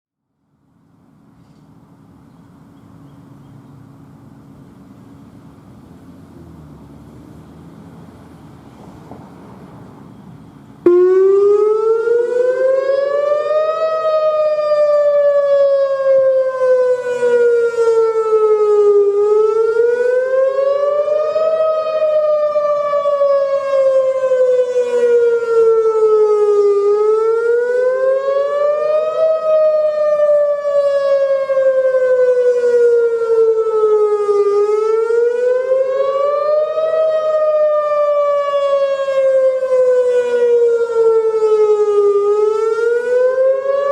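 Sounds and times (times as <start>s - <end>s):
electronic warning siren wailing: 10.8s - 43.9s.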